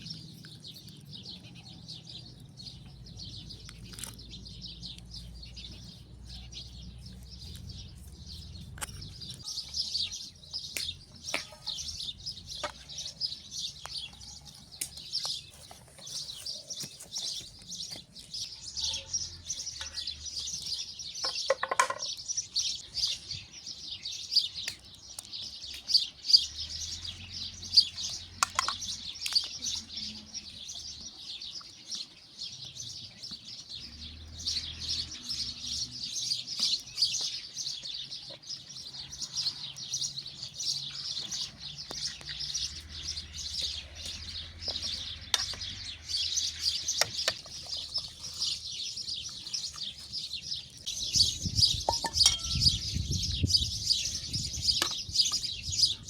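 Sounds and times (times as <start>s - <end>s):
small birds chirping and twittering: 0.0s - 56.0s.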